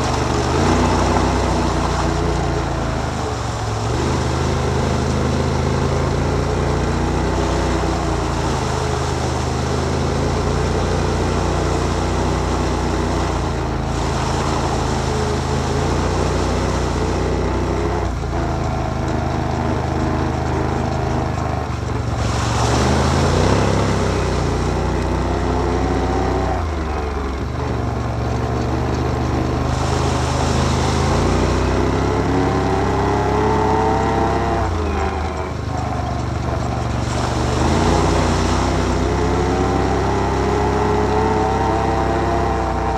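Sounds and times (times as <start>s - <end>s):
atv engine revving: 0.0s - 42.9s.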